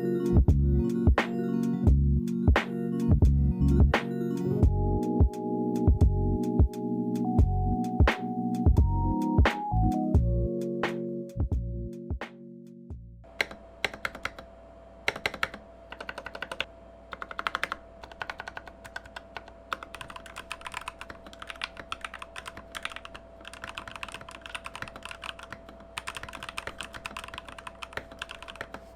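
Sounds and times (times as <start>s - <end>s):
keyboard typing clacks: 13.4s - 14.5s, 15.1s - 28.9s.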